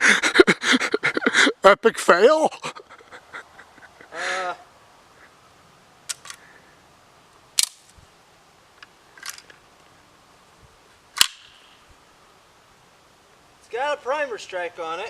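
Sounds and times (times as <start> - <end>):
metallic clicks of gun action: 6.1 - 6.4, 9.2 - 9.6.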